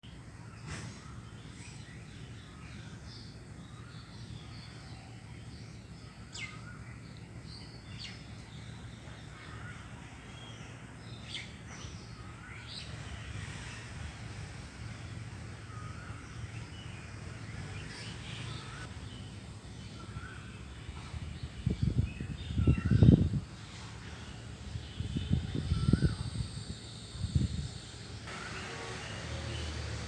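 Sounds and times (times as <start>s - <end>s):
birds chirping: 0.2s - 30.0s.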